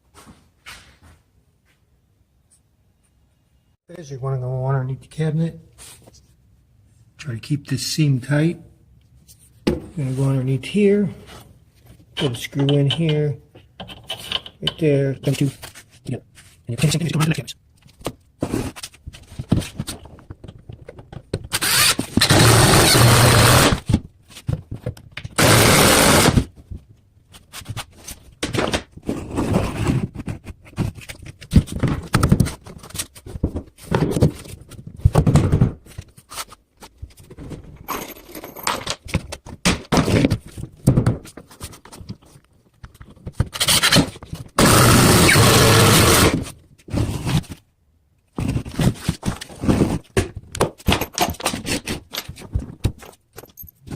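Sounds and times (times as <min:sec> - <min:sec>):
knocks and scrapes of cabinets: 0:09.6 - 0:10.0, 0:28.4 - 0:36.1, 0:37.1 - 0:41.8
power drill driving screws: 0:21.5 - 0:23.8, 0:25.4 - 0:26.4, 0:44.6 - 0:46.4.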